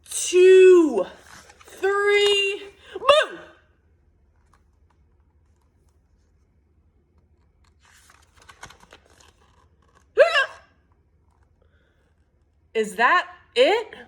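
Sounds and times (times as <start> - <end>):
scratching and clicking handling noise: 1.2 - 2.4, 4.2 - 10.2, 10.8 - 12.7
person voicing a hiccup: 3.0 - 3.6, 10.2 - 10.6.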